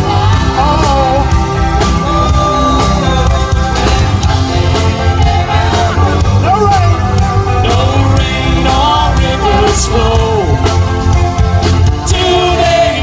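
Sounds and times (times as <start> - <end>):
bass: 0.0 - 13.0
drum beat: 0.0 - 13.0
lead voice singing: 0.0 - 13.0
live band playing pop song: 0.0 - 13.0.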